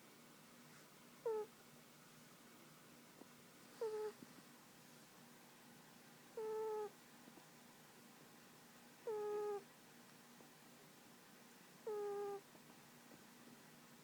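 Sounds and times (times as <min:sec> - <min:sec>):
cat snoring with whistling squeak: 0:06.4 - 0:06.9, 0:09.0 - 0:09.6, 0:11.8 - 0:12.4.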